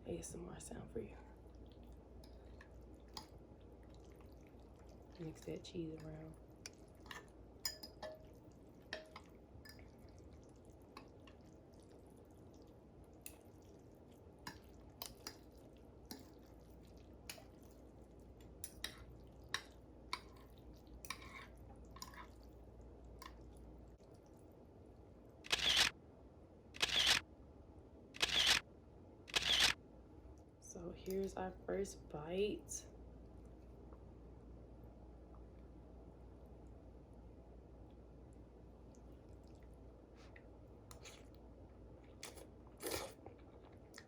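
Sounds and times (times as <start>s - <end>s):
utensil stirring cheesy noodles: 1.2s - 24.6s.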